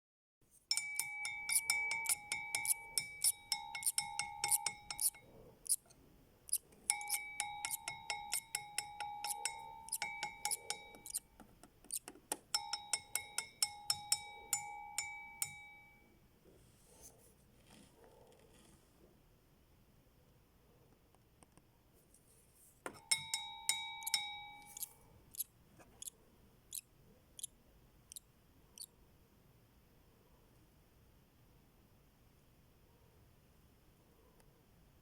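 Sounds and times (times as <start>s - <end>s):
bell-like tinkling melody: 0.7s - 5.2s, 6.9s - 11.2s, 12.6s - 16.1s, 23.0s - 24.9s.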